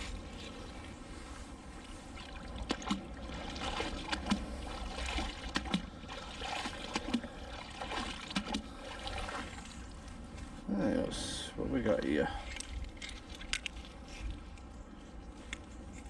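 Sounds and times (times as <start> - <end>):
water splashing and trickling: 0.0 - 15.3.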